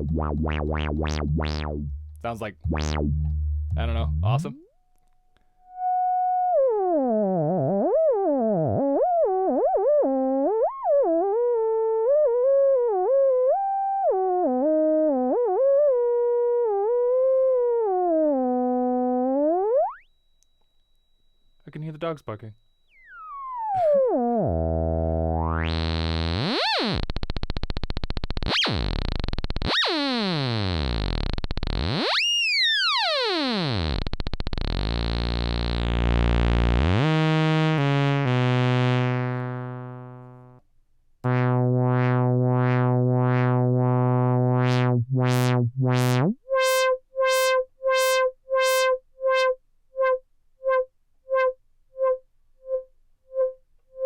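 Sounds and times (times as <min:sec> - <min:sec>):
synthesizer blips: 0:00.0 - 0:04.6, 0:41.3 - 0:49.5
synthesizer pitch glides: 0:41.3 - 0:49.5.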